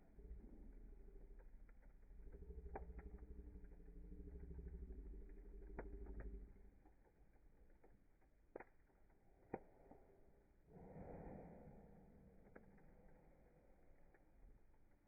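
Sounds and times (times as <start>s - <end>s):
burning wood crackling pops: 0.0s - 10.6s
low rumble of flame: 0.0s - 15.0s.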